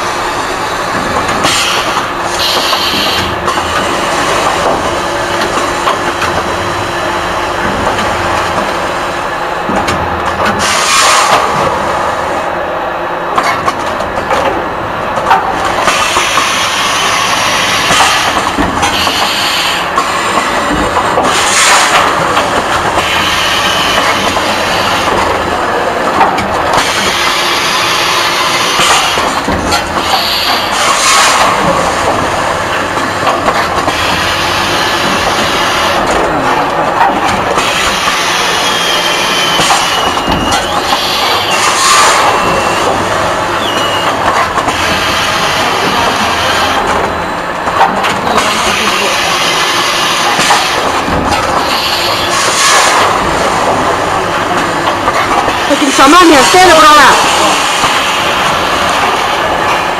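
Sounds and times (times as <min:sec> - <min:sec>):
machine mechanical clatter: 0:13.4 - 0:55.7.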